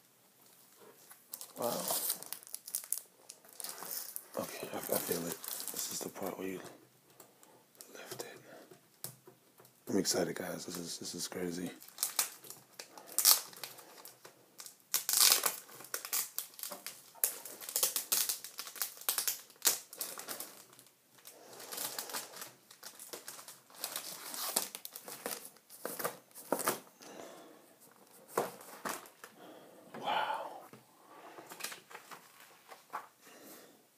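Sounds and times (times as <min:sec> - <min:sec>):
packaging crinkling and rustling: 0:00.4 - 0:06.6, 0:10.6 - 0:26.9, 0:31.5 - 0:33.2.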